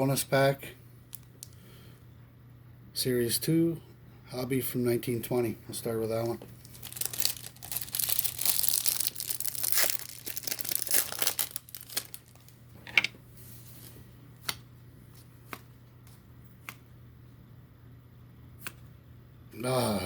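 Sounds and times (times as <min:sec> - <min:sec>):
card pack wrapper crinkling: 0:01.1 - 0:01.6, 0:06.1 - 0:12.6.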